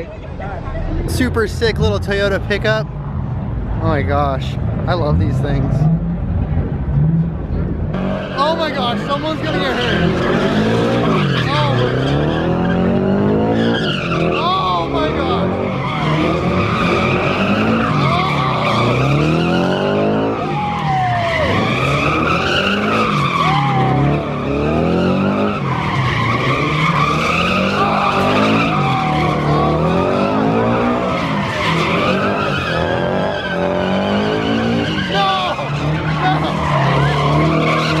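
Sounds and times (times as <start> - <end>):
car engine revving: 0.0 - 38.0
tyres squealing: 8.1 - 38.0.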